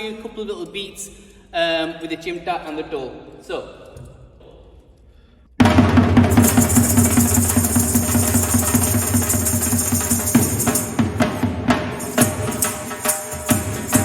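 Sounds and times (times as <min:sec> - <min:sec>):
deep drum beats: 0:05.6 - 0:14.0
metal jingle tongs rattling: 0:06.4 - 0:11.0, 0:12.0 - 0:14.0.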